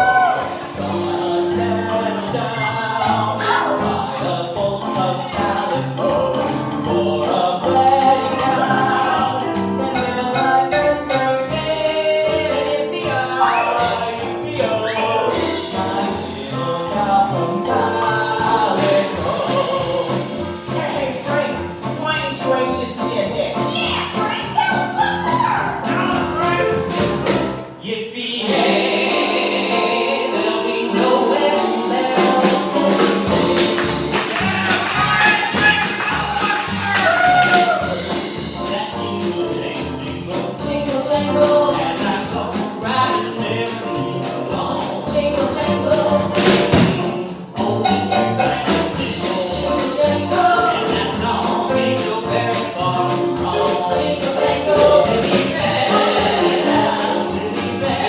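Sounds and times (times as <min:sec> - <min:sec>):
band with steady beat: 0:00.0 - 0:27.7, 0:30.4 - 0:58.0
voices singing together: 0:00.0 - 0:58.0.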